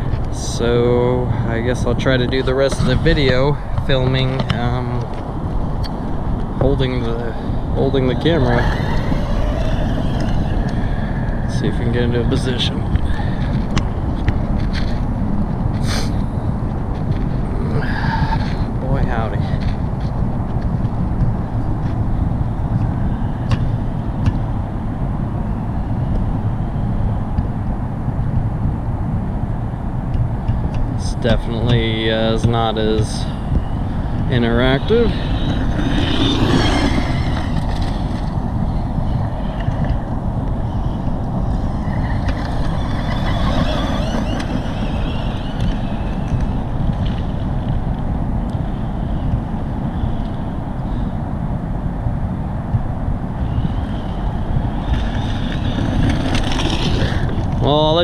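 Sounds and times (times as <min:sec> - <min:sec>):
wind buffeting microphone: 0:00.0 - 0:58.0
electric motor whine: 0:31.6 - 0:47.8, 0:53.4 - 0:57.6.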